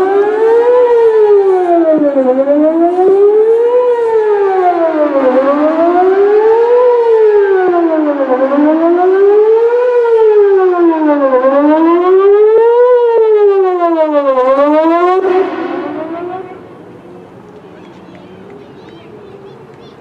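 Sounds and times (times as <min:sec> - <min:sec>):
warning siren wailing: 0:00.0 - 0:19.6.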